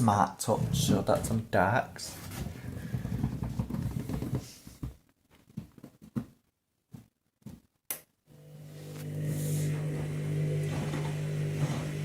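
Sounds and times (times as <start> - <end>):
washing machine churning and sloshing: 9.2 - 12.0.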